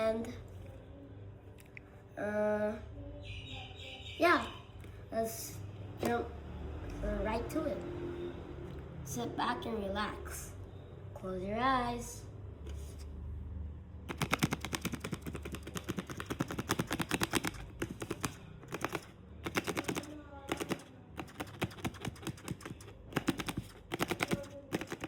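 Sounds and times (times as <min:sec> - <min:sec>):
paper fidget clickers clicking: 0:14.1 - 0:25.0.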